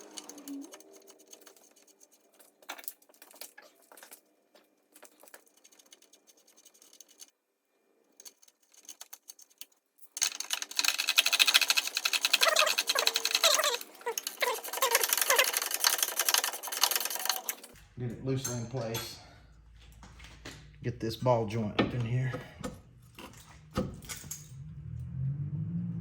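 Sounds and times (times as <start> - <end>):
small metal clicks: 0.0 - 7.4, 8.1 - 17.8
fast ratchet clicking: 10.2 - 17.7.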